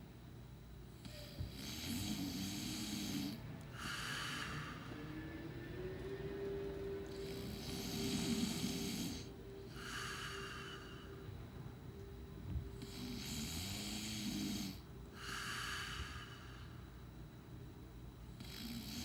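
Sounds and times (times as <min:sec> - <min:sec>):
faint hum: 0:00.0 - 0:19.0
man snoring: 0:01.0 - 0:11.2, 0:12.8 - 0:16.8, 0:18.3 - 0:19.0.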